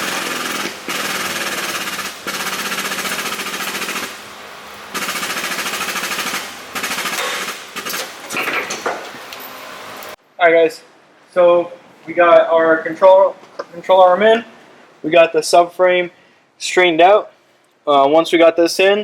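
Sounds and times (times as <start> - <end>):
pneumatic tool rattling on metal: 0.0 - 4.3, 4.9 - 9.6.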